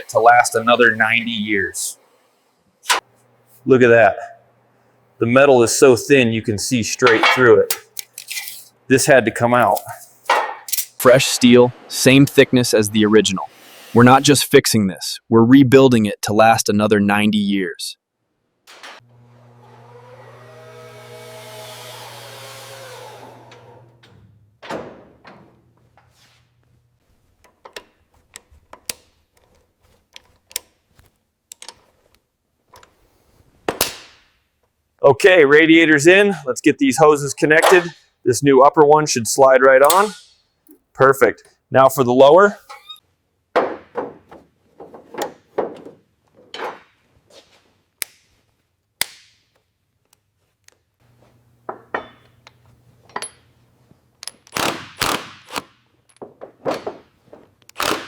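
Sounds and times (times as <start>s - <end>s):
tools clicking on metal: 7.2s - 8.7s, 39.8s - 40.4s.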